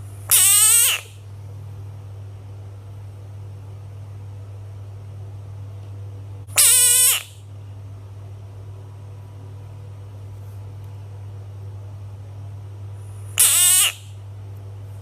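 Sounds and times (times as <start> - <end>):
steady low hum: 0.0 - 15.0
bullfrog call: 0.3 - 1.2, 6.6 - 7.4, 13.4 - 14.2.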